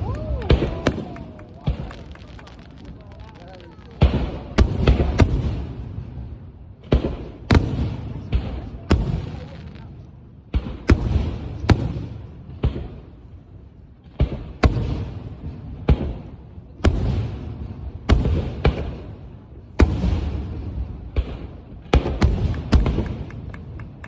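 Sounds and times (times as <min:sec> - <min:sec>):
rumble and crackle: 0:00.0 - 0:05.7
fireworks bangs: 0:00.0 - 0:24.0.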